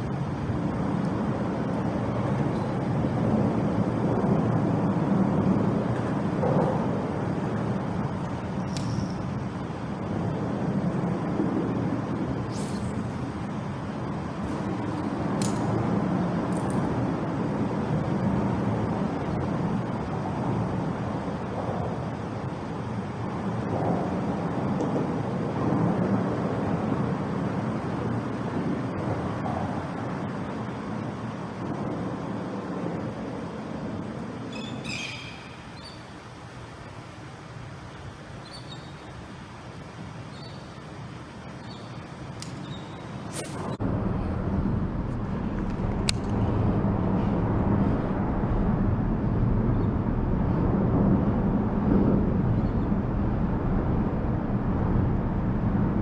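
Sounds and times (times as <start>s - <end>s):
road traffic rumble: 0.0s - 56.0s.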